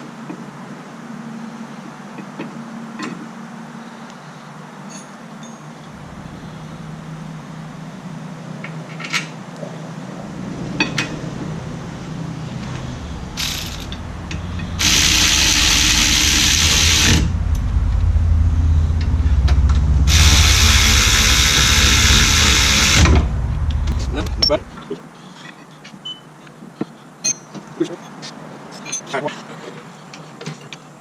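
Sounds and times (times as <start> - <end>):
low hum: 5.8 - 25.0
pneumatic ratchet burst: 13.4 - 17.4, 20.1 - 23.3.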